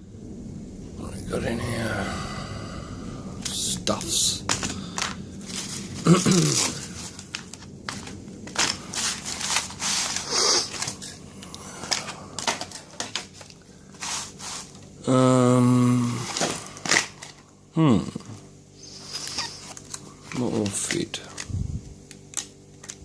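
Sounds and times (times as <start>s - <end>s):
plastic blister packet crinkling: 3.4s - 14.9s, 18.8s - 23.0s.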